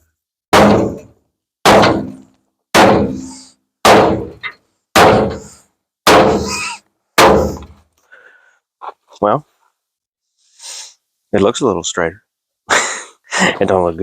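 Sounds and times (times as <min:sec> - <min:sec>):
hammer blows on sheet metal: 0:00.5 - 0:07.8.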